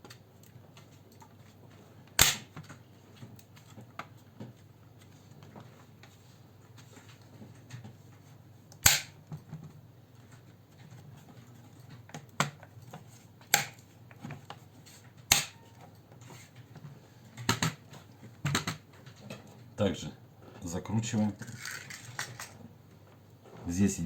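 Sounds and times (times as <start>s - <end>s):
plastic cover snapping clicks: 13.6s - 13.8s, 15.3s - 15.6s.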